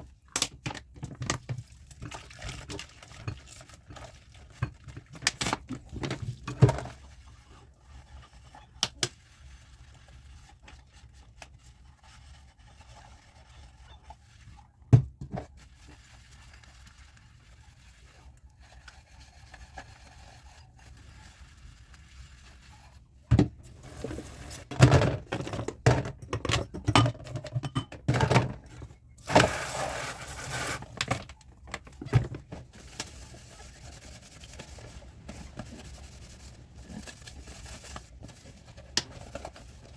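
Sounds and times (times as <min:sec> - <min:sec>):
dishes clinking in a sink: 0:26.5 - 0:28.6.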